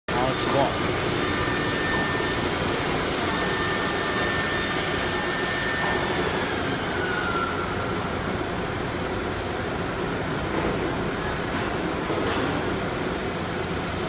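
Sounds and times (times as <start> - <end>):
workshop machinery whirring: 0.1 - 14.0.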